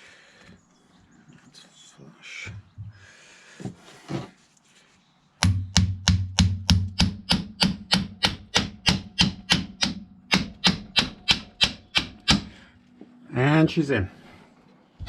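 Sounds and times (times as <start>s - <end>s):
hammer blows on metal: 5.4s - 12.6s.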